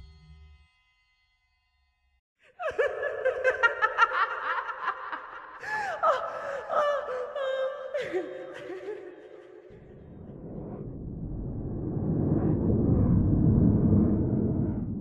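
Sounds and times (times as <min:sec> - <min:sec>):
horror laughter: 0:02.5 - 0:10.3.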